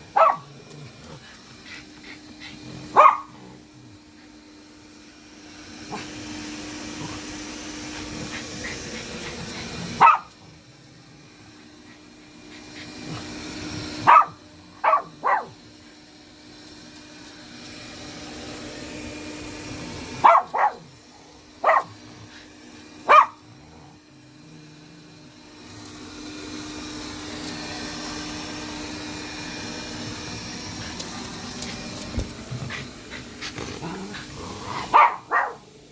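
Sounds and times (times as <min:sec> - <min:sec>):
small dog barking: 0:00.0 - 0:00.5, 0:02.9 - 0:03.5, 0:09.9 - 0:10.4, 0:14.0 - 0:15.6, 0:20.2 - 0:21.0, 0:21.6 - 0:22.0, 0:23.0 - 0:23.5, 0:34.8 - 0:35.7
robot vacuum motor hum: 0:00.0 - 0:35.9.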